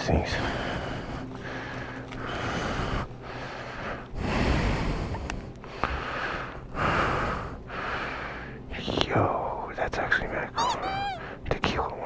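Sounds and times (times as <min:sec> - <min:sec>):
person breathing heavily: 0:00.3 - 0:08.7, 0:10.5 - 0:11.4.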